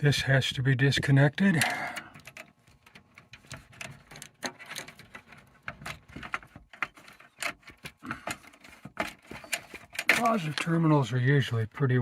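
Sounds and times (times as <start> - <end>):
small clicks and rattles: 1.5 - 10.8.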